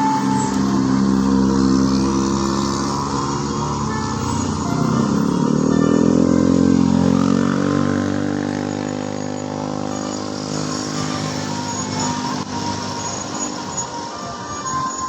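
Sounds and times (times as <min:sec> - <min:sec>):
vehicle engine passing by: 0:00.0 - 0:13.7.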